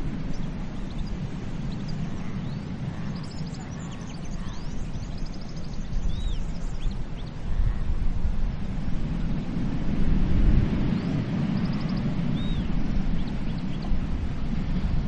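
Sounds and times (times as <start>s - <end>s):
birds chirping: 0.0s - 7.8s, 10.8s - 14.1s
ocean waves on beach: 0.0s - 15.0s.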